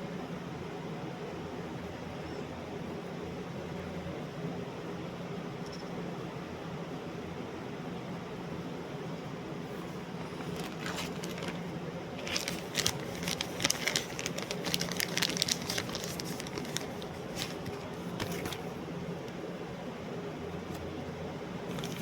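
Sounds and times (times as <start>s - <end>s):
low room hum: 0.0s - 22.0s.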